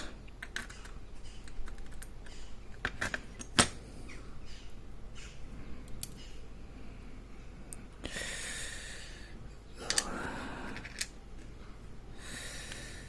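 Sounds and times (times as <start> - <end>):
small metal parts clicking: 0.0 - 3.7, 5.9 - 6.3, 10.7 - 11.2.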